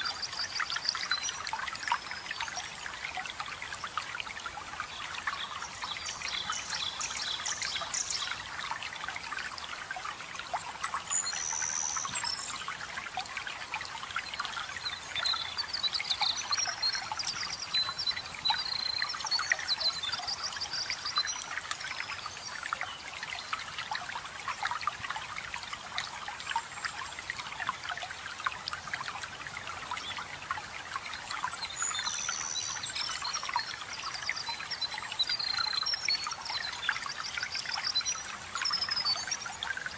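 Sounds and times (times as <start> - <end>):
songbirds chirping: 0.0 - 23.8
water trickling and splashing: 0.0 - 39.9.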